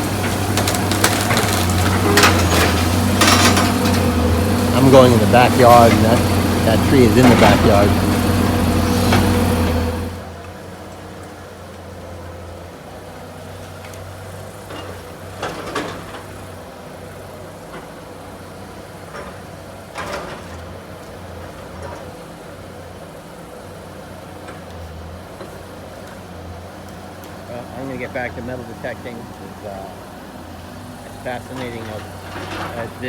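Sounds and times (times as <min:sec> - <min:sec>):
excavator diesel engine running: 0:00.0 - 0:33.0
sharp knocks and cracks: 0:00.2 - 0:04.0.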